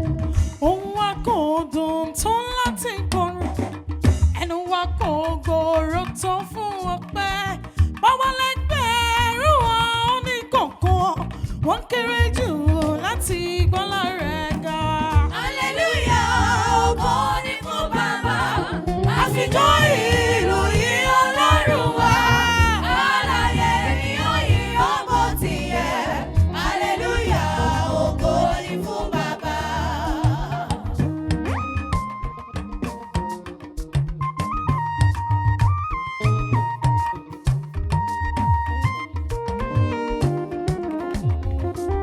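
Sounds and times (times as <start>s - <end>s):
gospel music with band: 11.3s - 42.0s.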